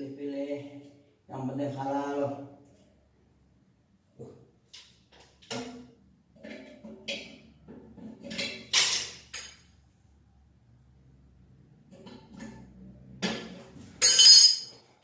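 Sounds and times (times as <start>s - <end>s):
tools and hard parts clinking: 13.2s - 15.0s.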